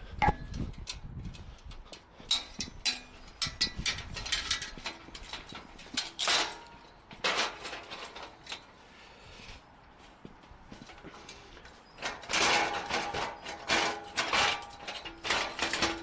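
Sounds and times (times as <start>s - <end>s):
metal ladder clicks and clanks: 0.1s - 8.8s, 10.8s - 16.0s
ladder scraping: 2.2s - 9.1s, 10.8s - 16.0s.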